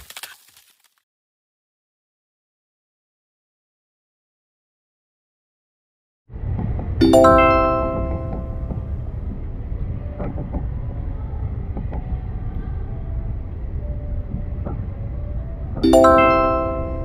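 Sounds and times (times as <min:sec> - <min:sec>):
vehicle rumble: 0:06.3 - 0:17.0.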